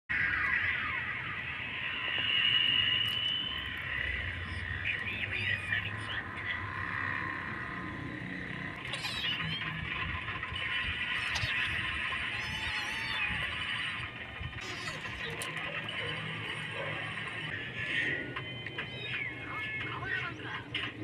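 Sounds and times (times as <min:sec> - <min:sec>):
chorus of high-pitched calls: 0:00.1 - 0:20.7
cat meowing: 0:08.8 - 0:10.0, 0:11.1 - 0:15.8, 0:18.8 - 0:20.0.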